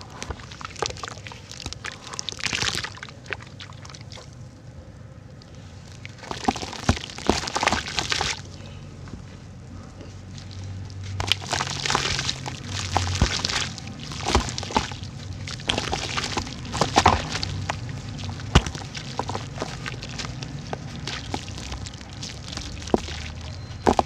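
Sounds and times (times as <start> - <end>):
dirt crumbling in water: 0.2 - 4.3, 6.0 - 8.5, 10.4 - 24.0
chunks knocking: 15.6 - 22.0.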